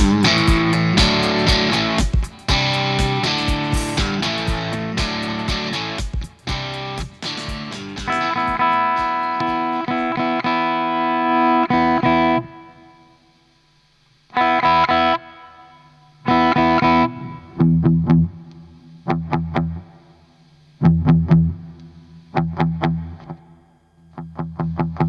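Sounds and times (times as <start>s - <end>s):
overdriven electric guitar chords: 0.0s - 12.9s.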